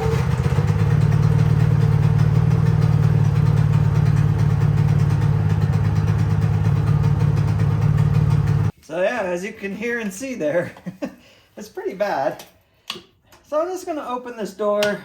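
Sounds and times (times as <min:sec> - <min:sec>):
generator engine droning: 0:00.0 - 0:08.7.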